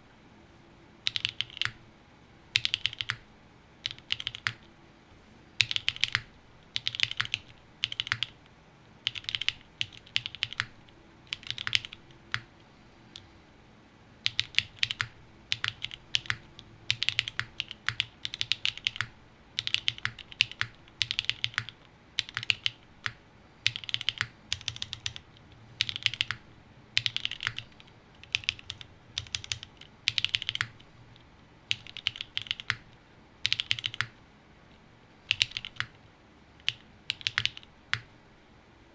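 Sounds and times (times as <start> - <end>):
typing on mechanical keyboard: 1.0 - 1.8, 2.6 - 3.2, 3.8 - 4.7, 5.6 - 8.4, 9.0 - 12.5, 14.2 - 26.4, 27.0 - 30.8, 31.7 - 34.2, 35.3 - 36.0, 36.6 - 38.1.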